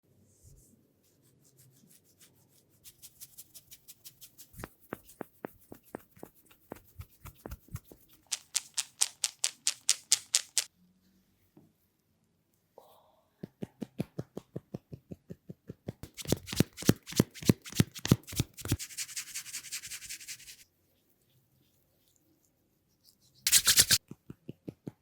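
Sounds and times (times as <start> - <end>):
hands tapping massage slaps: 4.6 - 10.7, 16.0 - 18.8.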